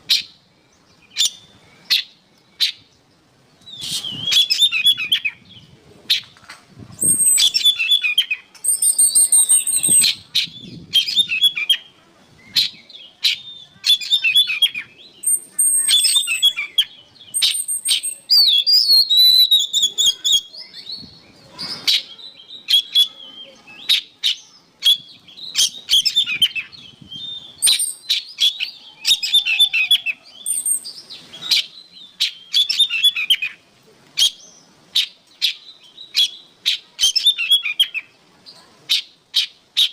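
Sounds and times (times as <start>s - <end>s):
bird singing whistles and chatters: 0.0s - 3.0s, 3.6s - 6.3s, 6.9s - 33.6s, 34.2s - 38.2s.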